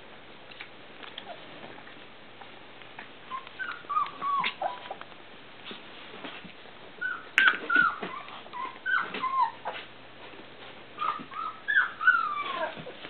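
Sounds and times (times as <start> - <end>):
puppies whimpering: 3.3 - 5.0, 7.0 - 9.8, 11.0 - 13.0.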